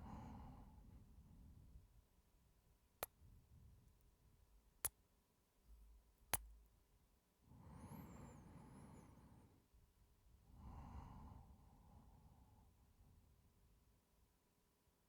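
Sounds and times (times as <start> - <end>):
soft breath: 0.0 - 1.8, 7.5 - 9.7, 10.4 - 13.2.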